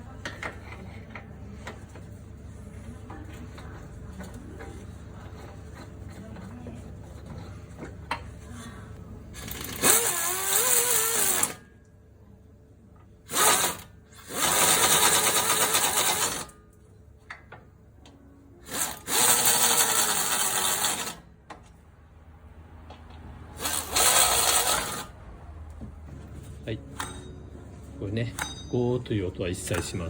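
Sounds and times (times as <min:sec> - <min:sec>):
handheld power tool whining: 0:09.4 - 0:11.6, 0:13.3 - 0:16.5, 0:18.6 - 0:21.2, 0:23.6 - 0:25.1.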